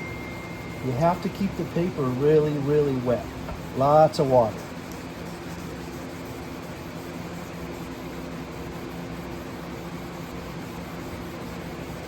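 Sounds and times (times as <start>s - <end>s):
machine hum: 0.0s - 8.5s.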